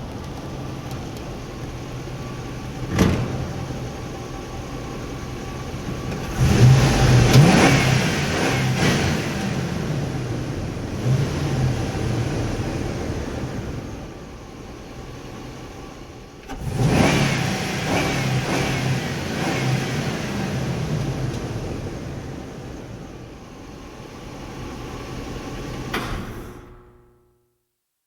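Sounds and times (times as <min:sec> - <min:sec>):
truck engine revving: 0:00.0 - 0:14.2, 0:16.5 - 0:23.3.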